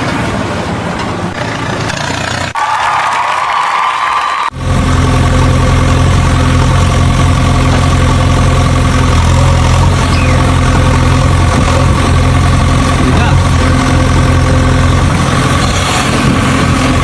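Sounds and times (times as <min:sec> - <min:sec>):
engine idling: 0:04.5 - 0:17.0.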